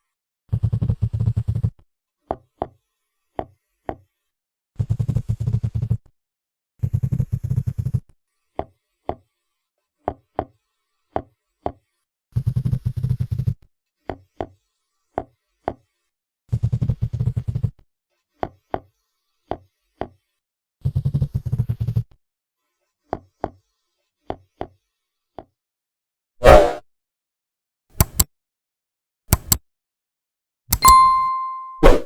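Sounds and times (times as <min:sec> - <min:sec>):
sharp clicks: 0:28.0 - 0:28.3, 0:29.3 - 0:29.6.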